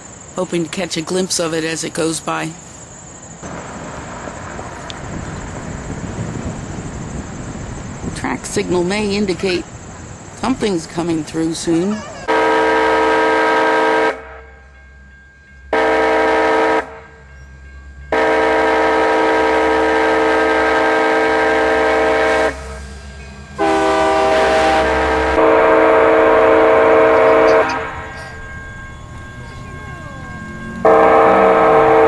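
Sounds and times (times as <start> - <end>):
locomotive horn blasts: 12.3 - 14.6, 15.7 - 17.3, 18.1 - 28.5, 30.4 - 32.0.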